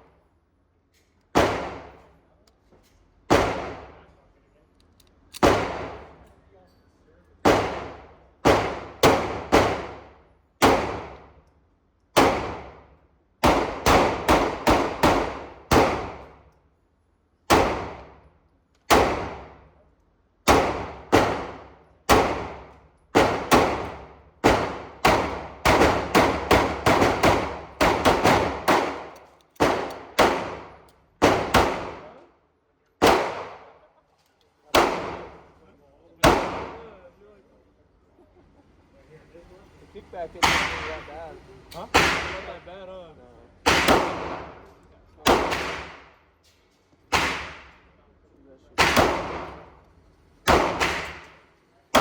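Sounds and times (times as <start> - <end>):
echoing gunshots: 1.3 - 2.0, 3.3 - 4.0, 5.4 - 6.2, 7.4 - 11.3, 12.2 - 16.4, 17.5 - 18.3, 18.9 - 19.7, 20.4 - 32.2, 33.0 - 33.8, 34.7 - 35.5, 36.2 - 36.9, 40.4 - 41.1, 41.9 - 42.6, 43.6 - 44.6, 45.2 - 46.2, 47.1 - 47.9, 48.8 - 49.8, 50.4 - 51.4.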